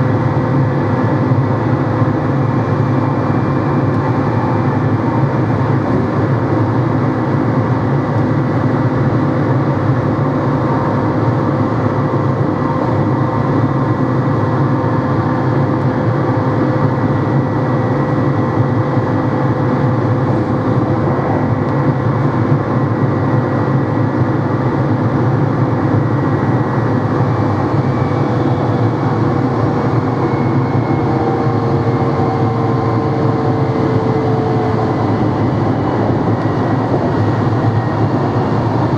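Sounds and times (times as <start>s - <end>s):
train motors rumbling and whining: 10.2s - 38.9s.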